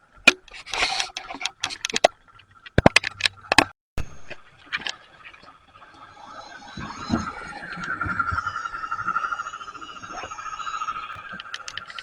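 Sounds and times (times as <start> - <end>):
model train clicking and rattling: 11.1 - 12.0.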